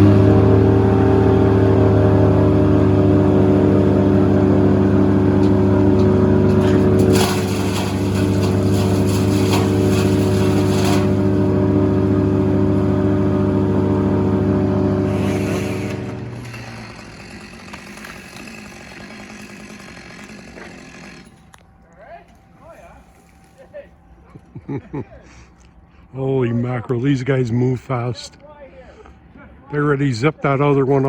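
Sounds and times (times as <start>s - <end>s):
engine running steadily: 0.0s - 26.2s
crackling and rattling: 4.0s - 21.8s.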